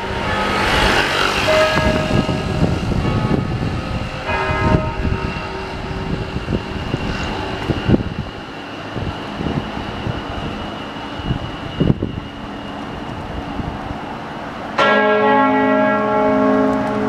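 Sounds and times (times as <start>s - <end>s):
cathedral bell ringing: 0.0s - 6.9s, 14.8s - 17.0s
street noise: 0.0s - 17.0s
wind rumble: 0.0s - 17.0s.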